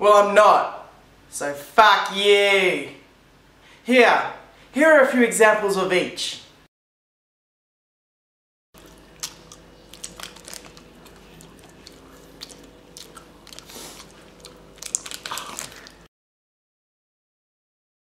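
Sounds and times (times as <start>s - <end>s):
faint hum: 8.8s - 16.1s
person chewing loudly: 8.8s - 16.1s.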